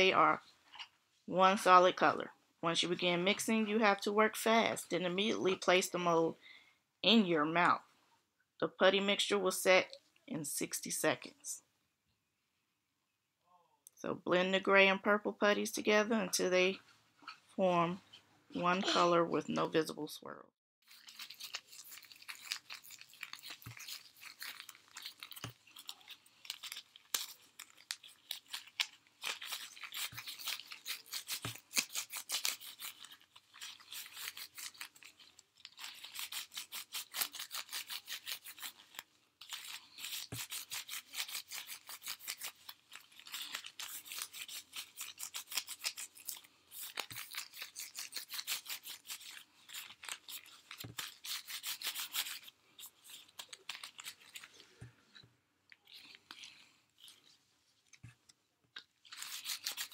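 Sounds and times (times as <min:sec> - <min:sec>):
hands kneading putty: 0:20.9 - 0:59.9.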